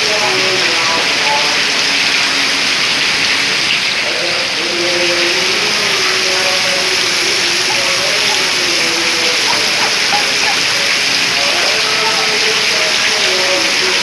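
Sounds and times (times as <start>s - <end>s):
heavy rain pouring: 0.0s - 14.0s
faint voices: 3.4s - 14.0s.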